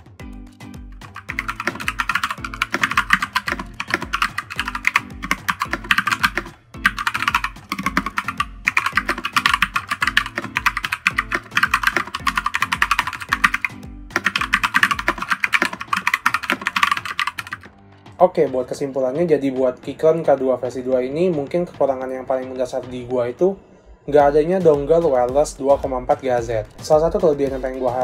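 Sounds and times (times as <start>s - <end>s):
music with steady beat: 0.0s - 18.7s, 24.2s - 28.0s
mechanical keyboard typing: 1.0s - 17.7s.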